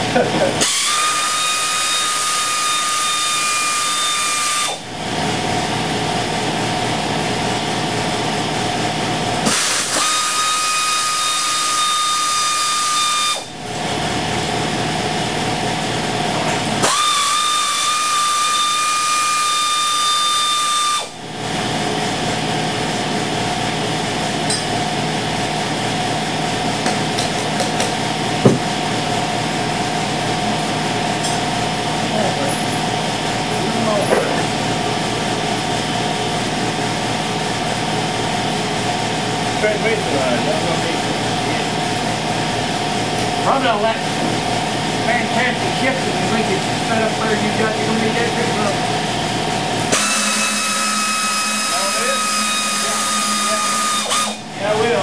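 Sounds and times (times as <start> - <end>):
compressor running with even beat: 0.0 - 55.0
compressor hissing air with whistle: 0.6 - 5.1, 9.3 - 14.1, 14.7 - 23.2, 48.5 - 55.0
sharp knock: 27.6 - 28.7.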